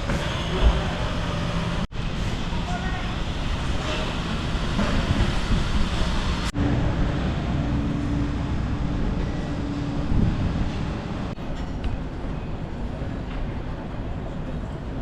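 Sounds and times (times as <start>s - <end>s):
moving vehicle rumble and hiss: 0.0s - 11.4s.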